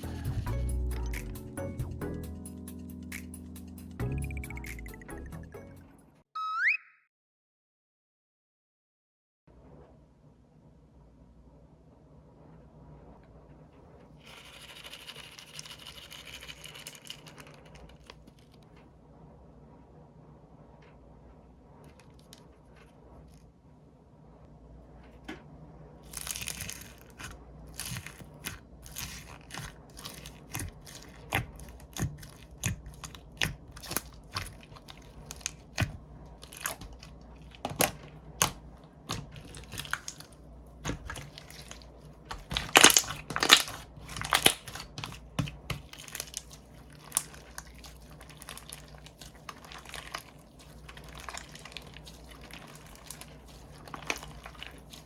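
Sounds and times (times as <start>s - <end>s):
plastic crackling and crinkling: 14.2s - 18.8s, 26.0s - 55.0s.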